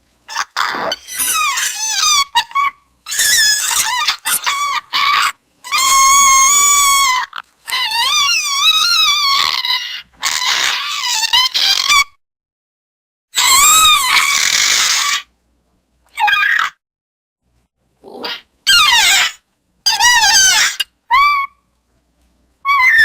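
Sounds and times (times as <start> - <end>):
high-pitched creature squeals: 0.3 - 12.1, 13.4 - 15.3, 18.1 - 21.5, 22.7 - 23.0.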